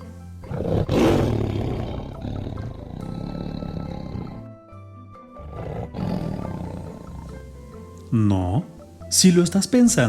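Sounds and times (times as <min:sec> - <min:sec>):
soft background music: 0:00.0 - 0:10.0
tiger roaring: 0:00.4 - 0:04.6, 0:05.3 - 0:07.6.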